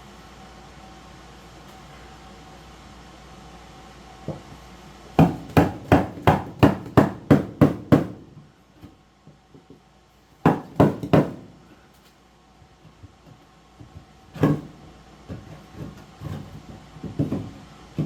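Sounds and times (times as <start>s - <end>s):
hammer striking wood: 5.2s - 8.2s, 10.4s - 11.5s.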